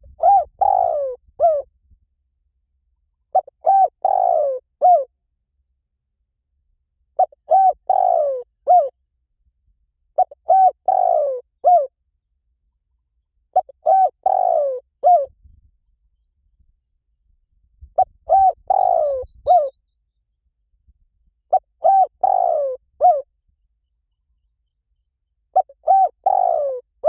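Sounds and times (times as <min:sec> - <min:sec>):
dove cooing: 0:00.0 - 0:01.7, 0:03.3 - 0:05.1, 0:07.2 - 0:09.0, 0:10.2 - 0:11.9, 0:13.5 - 0:15.3, 0:18.0 - 0:19.8, 0:21.5 - 0:23.3, 0:25.5 - 0:27.0.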